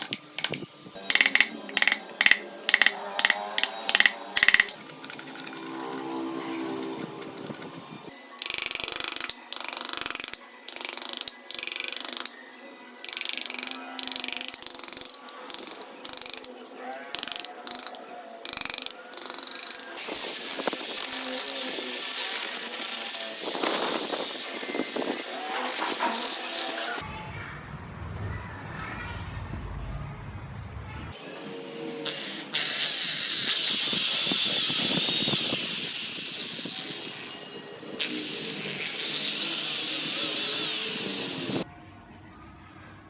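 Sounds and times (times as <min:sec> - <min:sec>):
power tool working wood: 0:13.0 - 0:27.0, 0:31.4 - 0:41.6
low dull rumble: 0:27.1 - 0:31.2.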